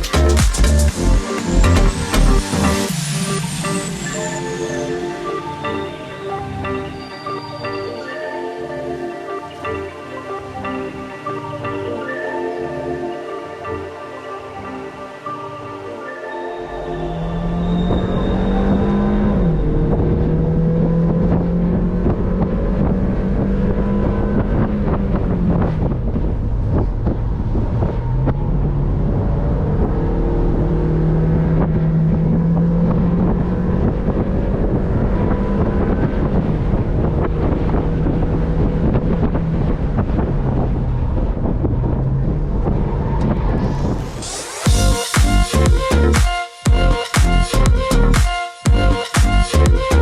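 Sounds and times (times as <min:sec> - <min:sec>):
wind noise on microphone: 0:17.0 - 0:45.9
car engine running: 0:17.1 - 0:50.0.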